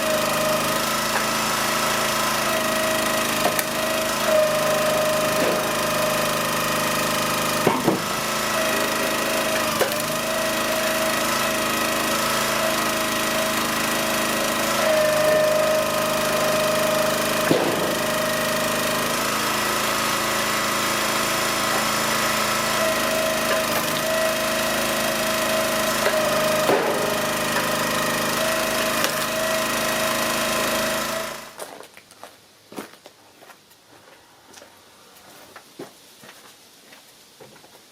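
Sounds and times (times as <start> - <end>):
small gasoline engine running: 0.0 - 31.7
firewood splitting cracks: 2.6 - 6.2, 7.1 - 11.0, 17.4 - 19.2, 22.9 - 24.2, 25.2 - 27.8, 28.4 - 29.6.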